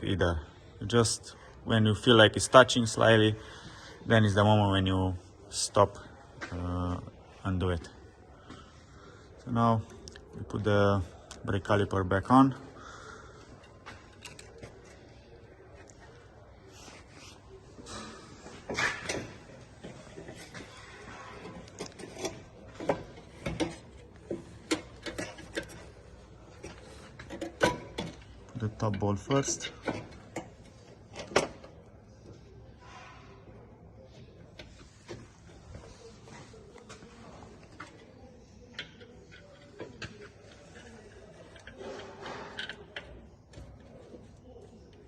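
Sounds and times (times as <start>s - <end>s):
hand tools clicking and tapping: 21.7s - 25.9s.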